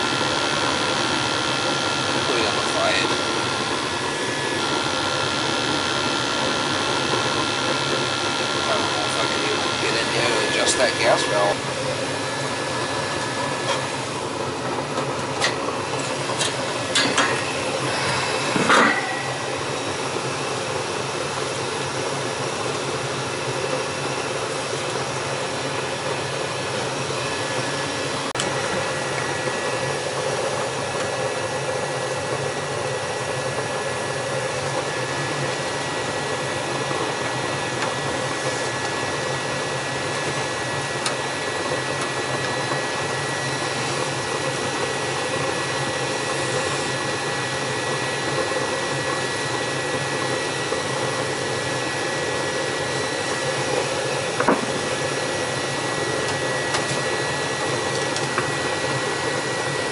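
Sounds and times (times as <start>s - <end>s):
gas furnace blowing hum: 0.0s - 59.9s
sharp clicks and knocks: 54.4s - 54.8s.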